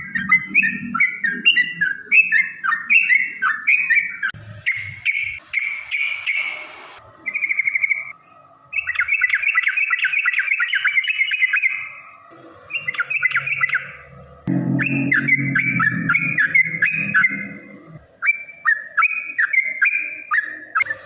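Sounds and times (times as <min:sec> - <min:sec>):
bulbul singing: 0:12.7 - 0:20.9.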